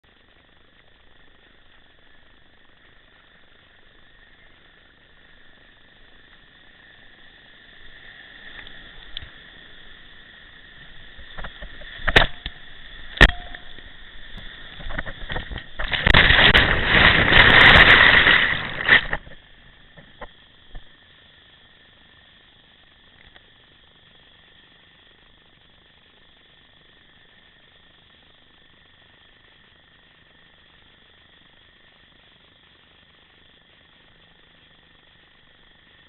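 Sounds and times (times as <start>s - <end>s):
high-pitched hum: 0.0s - 35.9s
whitewater rushing: 15.8s - 19.3s.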